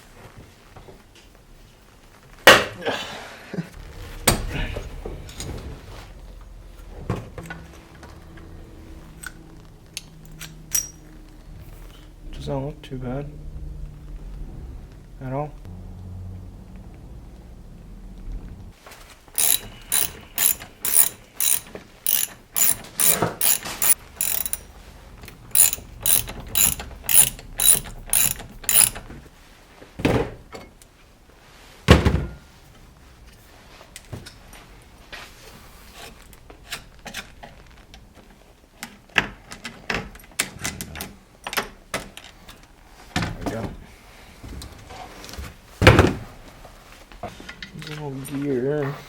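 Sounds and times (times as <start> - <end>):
ratchet wrench clicking: 19.4 - 29.1.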